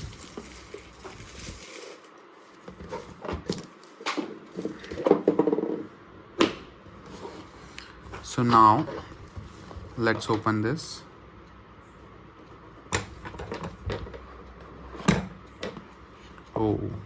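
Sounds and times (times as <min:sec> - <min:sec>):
box and packaging handling: 0:00.0 - 0:05.5, 0:06.9 - 0:10.1.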